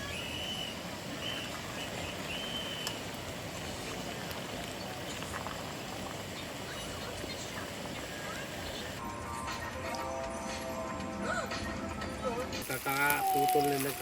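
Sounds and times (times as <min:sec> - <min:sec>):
outdoor background noise: 0:00.0 - 0:14.0.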